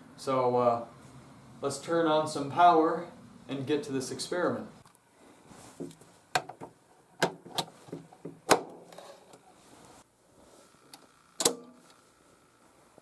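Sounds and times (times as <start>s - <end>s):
equipment clicks and knocks: 5.8s - 8.8s.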